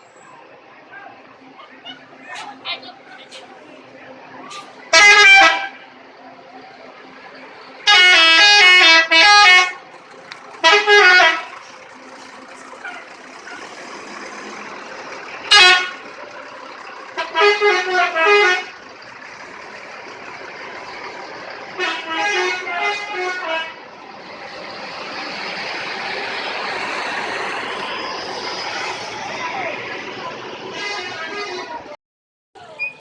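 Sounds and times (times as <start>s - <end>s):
multi-tone bus air horn: 4.5s - 5.9s, 7.8s - 9.8s, 10.6s - 11.8s, 15.4s - 16.1s, 17.1s - 18.8s, 21.7s - 23.8s, 30.5s - 32.0s.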